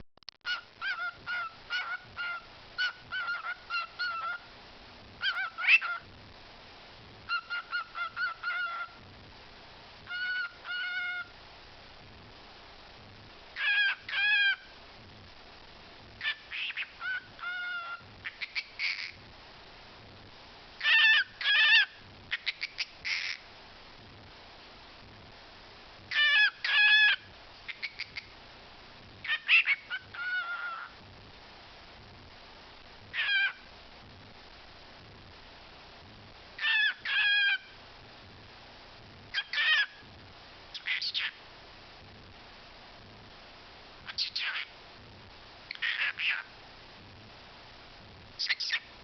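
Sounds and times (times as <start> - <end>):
talking bird calling: 0.5 - 4.5, 5.2 - 6.0, 7.3 - 9.0, 10.1 - 11.4, 13.6 - 14.7, 16.2 - 19.2, 20.8 - 23.4, 26.1 - 28.3, 29.2 - 31.0, 33.1 - 33.7, 36.6 - 37.8, 39.3 - 40.0, 40.7 - 41.4, 44.1 - 44.8, 45.7 - 46.5, 48.4 - 48.9.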